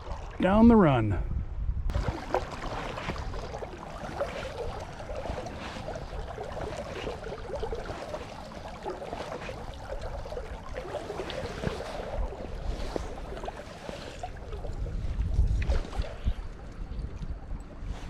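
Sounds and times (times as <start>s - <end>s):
wind buffeting microphone: 0.0s - 8.1s, 14.2s - 18.0s
river water flowing: 1.9s - 14.9s.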